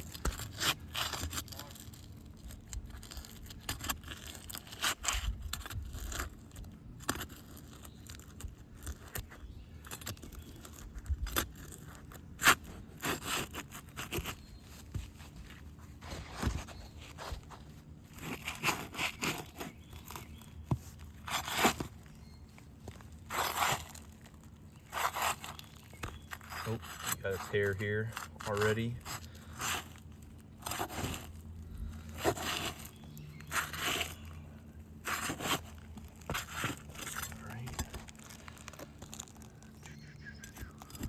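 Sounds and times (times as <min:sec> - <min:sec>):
pry bar scraping under shingles: 0:00.0 - 0:41.0.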